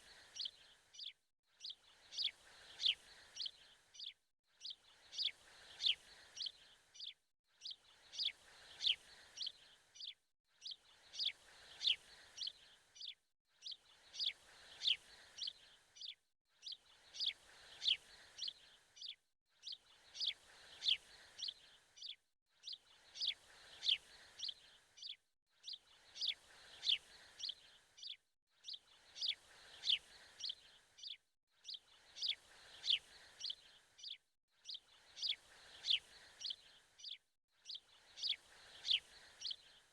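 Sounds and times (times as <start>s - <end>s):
birds chirping: 26.2s - 39.8s.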